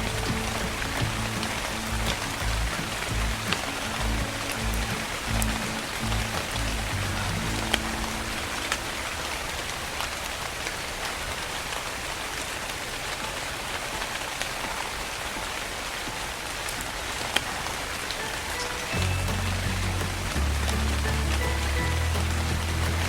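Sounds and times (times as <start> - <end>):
low sustained music notes: 0.0 - 10.5, 17.6 - 23.0
steady rain falling: 0.0 - 23.0.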